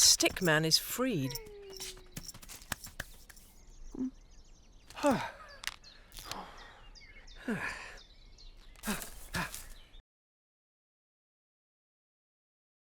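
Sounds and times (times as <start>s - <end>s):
person sighing or groaning: 4.9s - 6.8s, 7.4s - 8.0s, 8.8s - 9.7s.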